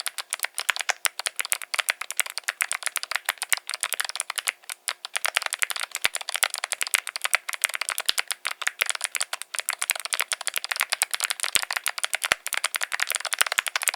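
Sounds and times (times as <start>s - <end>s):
fast mechanical keyboard typing: 0.0s - 13.9s.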